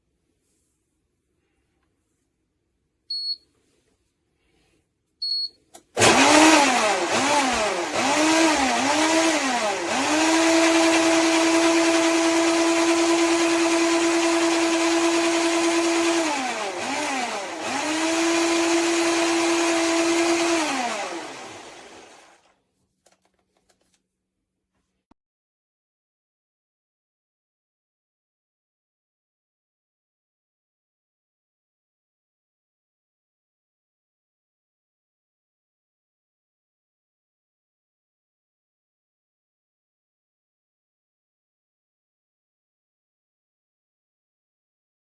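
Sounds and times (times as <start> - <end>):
blender motor running: 6.0 - 22.4.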